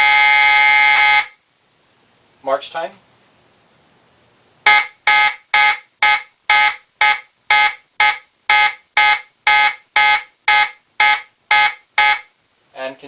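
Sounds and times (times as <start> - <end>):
fire alarm horn blasts: 0.0 - 1.4, 4.7 - 12.4.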